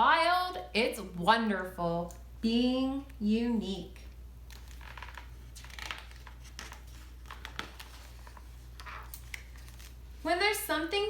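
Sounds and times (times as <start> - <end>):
paper pages rustling: 4.4 - 10.3.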